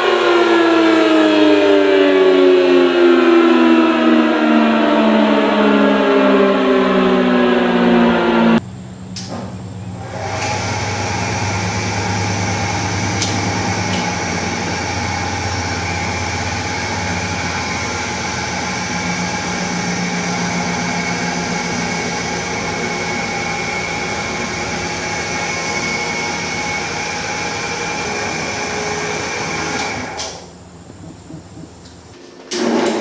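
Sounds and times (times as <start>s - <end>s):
outdoor warning siren steady tone: 0.0s - 32.1s.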